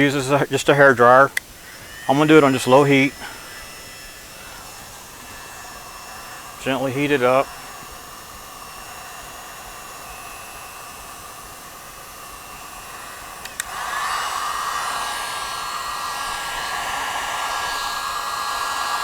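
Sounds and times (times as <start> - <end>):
heat gun blowing: 0.0 - 19.0
sharp click: 13.4 - 13.8.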